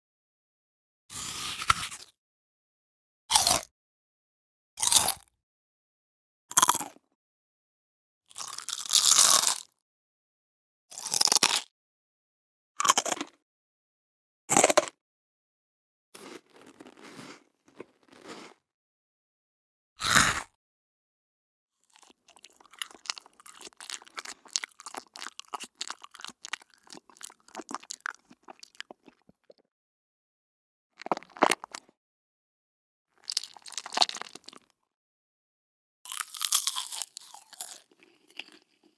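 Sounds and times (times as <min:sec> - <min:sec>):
crunchy bites into crisp food: 0:01.1 - 0:02.2, 0:03.3 - 0:03.7, 0:04.8 - 0:05.3, 0:06.6 - 0:07.0, 0:08.3 - 0:09.7, 0:10.9 - 0:11.7, 0:12.8 - 0:13.4, 0:16.2 - 0:18.6, 0:20.0 - 0:20.6, 0:21.9 - 0:29.6, 0:31.0 - 0:31.9, 0:33.2 - 0:34.7, 0:36.1 - 0:38.9.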